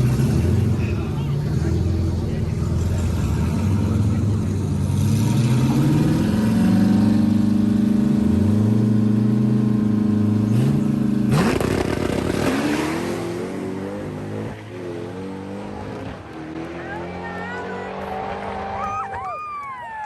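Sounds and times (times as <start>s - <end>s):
race car engines revving: 0.0s - 19.8s.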